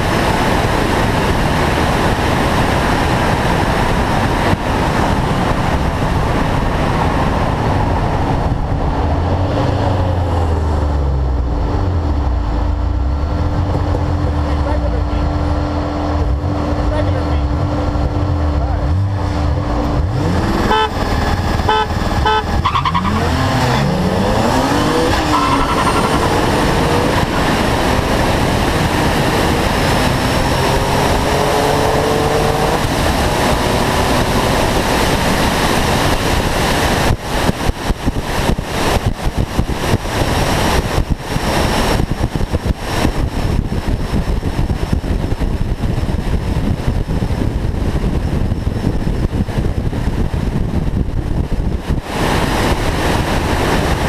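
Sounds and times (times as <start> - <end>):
car engine revving: 0.0 - 37.0
wind and road noise: 0.0 - 54.0.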